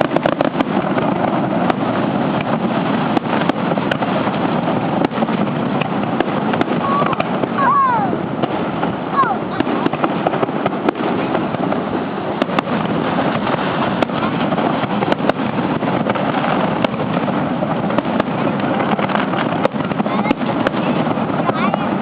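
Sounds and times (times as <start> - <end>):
fireworks cracking and popping: 0.0 - 22.0.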